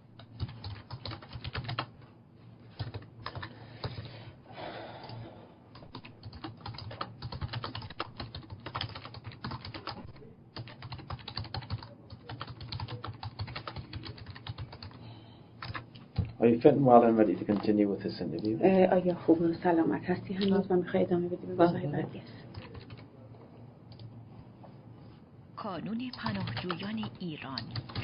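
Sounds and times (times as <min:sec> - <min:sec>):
typing on a keyboard: 0:00.2 - 0:01.9, 0:02.8 - 0:04.0, 0:05.8 - 0:15.0, 0:15.6 - 0:16.3, 0:22.5 - 0:23.0, 0:26.0 - 0:28.0.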